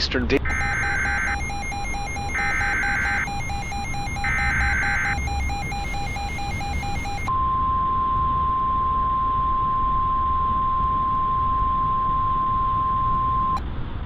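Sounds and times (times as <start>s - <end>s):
steady high alarm tone: 0.4s - 7.3s.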